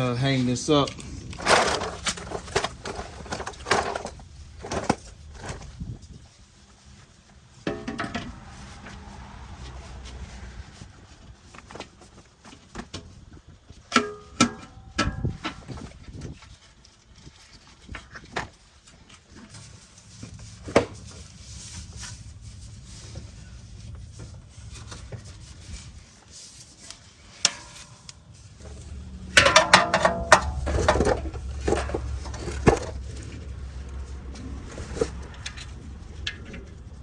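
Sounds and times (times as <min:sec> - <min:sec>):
rattling metal clanks: 0:00.8 - 0:05.6, 0:27.3 - 0:33.6
metal clinks and knocks: 0:27.4 - 0:33.5.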